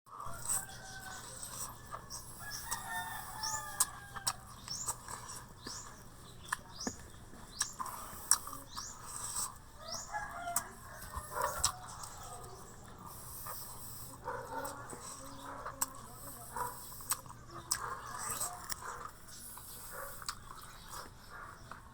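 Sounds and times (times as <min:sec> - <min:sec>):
low clucking bird calls: 0:00.2 - 0:21.9
birds high rising chirps: 0:00.3 - 0:14.6.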